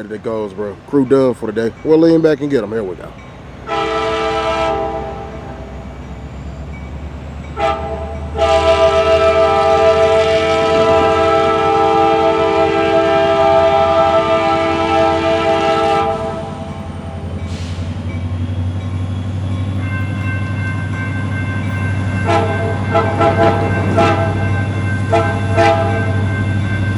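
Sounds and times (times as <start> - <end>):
diesel engine rumbling: 0.0 - 26.9
locomotive air horn blast: 3.7 - 5.7, 7.6 - 18.0, 22.2 - 24.4, 25.1 - 26.2.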